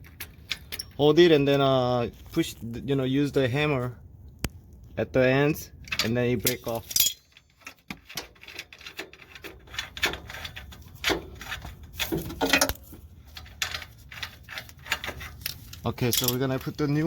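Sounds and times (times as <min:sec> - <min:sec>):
metal tools clinking: 0:00.1 - 0:01.1, 0:05.9 - 0:17.0.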